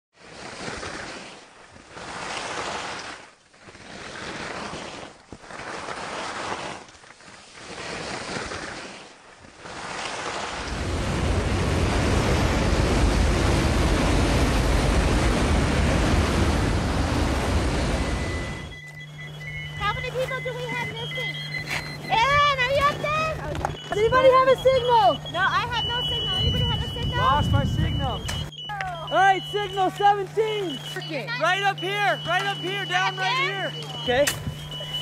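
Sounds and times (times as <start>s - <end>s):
skis swishing through snow: 0.2s - 11.5s
wind buffeting microphone: 10.6s - 18.7s, 22.0s - 28.5s.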